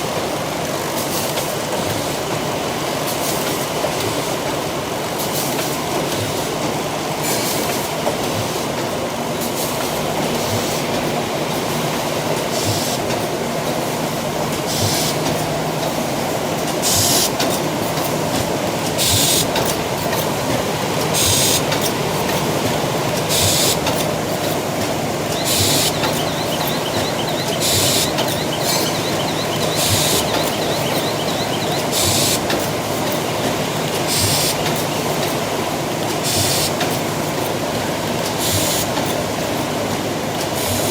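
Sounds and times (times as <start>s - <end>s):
machine drone: 21.2s - 37.4s.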